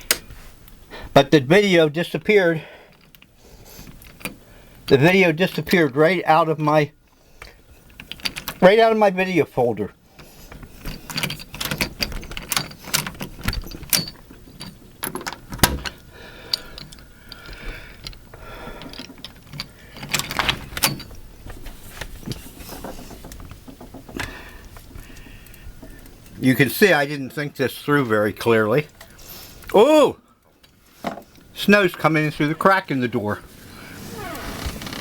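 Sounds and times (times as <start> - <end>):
locks and latch clicking: 11.0 - 16.0
rustling: 33.3 - 35.0.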